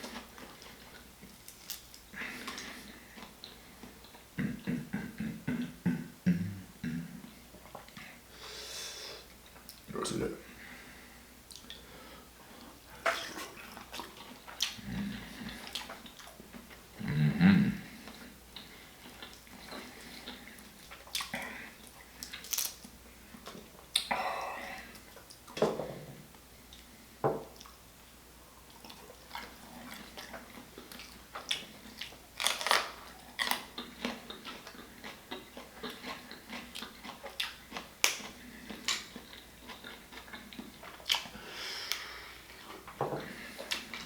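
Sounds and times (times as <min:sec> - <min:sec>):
person chewing and smacking: 0:12.6 - 0:16.8, 0:18.0 - 0:24.2, 0:28.6 - 0:44.0.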